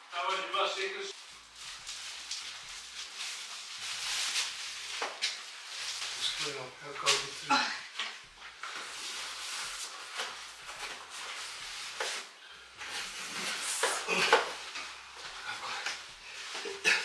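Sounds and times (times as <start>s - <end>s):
rustling: 1.1s - 17.0s.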